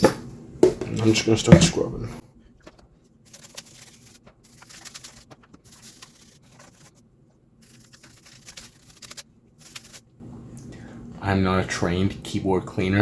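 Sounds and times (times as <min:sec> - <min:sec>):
toothbrush scrubbing keyboard: 0:02.6 - 0:07.0, 0:07.6 - 0:10.0.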